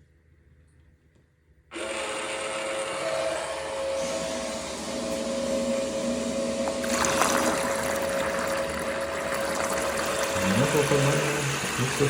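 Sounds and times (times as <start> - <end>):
water rushing down a drain: 6.6 - 12.0.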